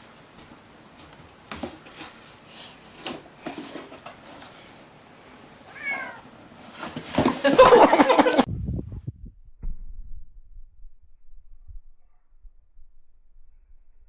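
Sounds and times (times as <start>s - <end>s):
animal cry: 5.7s - 6.3s.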